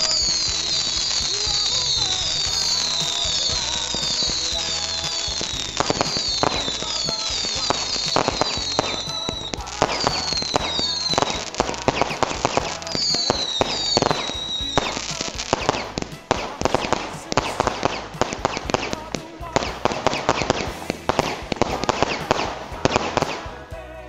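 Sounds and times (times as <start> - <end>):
crackle of firework bangs: 0.0 - 19.0
fireworks whistles falling in pitch: 0.0 - 19.0.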